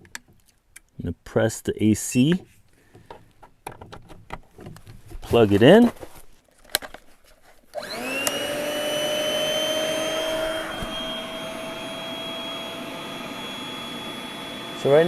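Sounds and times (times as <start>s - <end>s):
air pump switch click: 7.8s - 8.4s
air pump motor whining: 7.8s - 15.0s.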